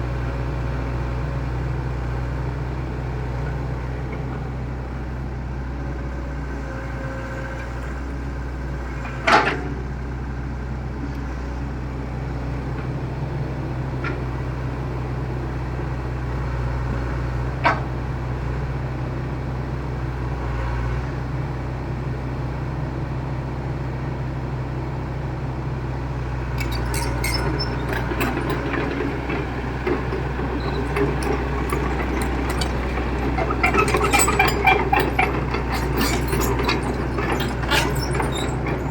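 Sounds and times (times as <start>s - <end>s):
excavator diesel engine running: 26.3s - 38.9s
crackling and rattling clicks: 26.6s - 38.9s.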